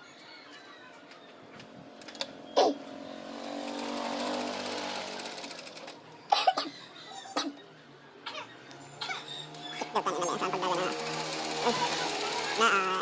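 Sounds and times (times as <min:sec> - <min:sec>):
sewing machine ticking: 0:03.5 - 0:06.0, 0:10.4 - 0:13.0.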